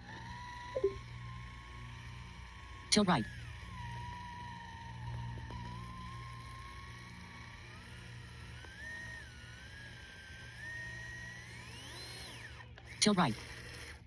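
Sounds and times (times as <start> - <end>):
electric motor whining: 0.0 - 14.0.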